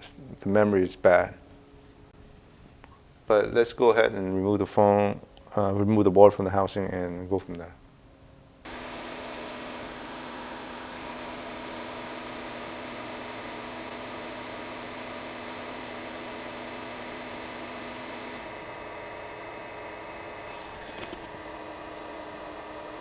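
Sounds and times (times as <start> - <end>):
electric blower whining: 8.7 - 22.6.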